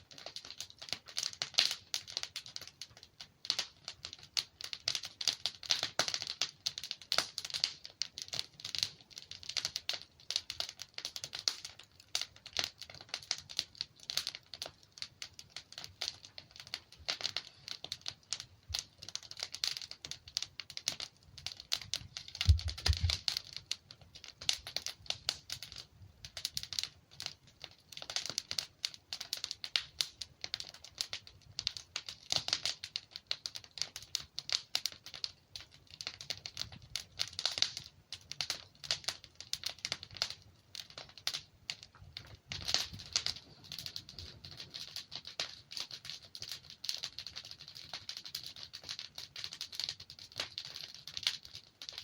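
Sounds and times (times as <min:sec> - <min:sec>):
logs crackling in fireplace: 0:00.0 - 0:52.0.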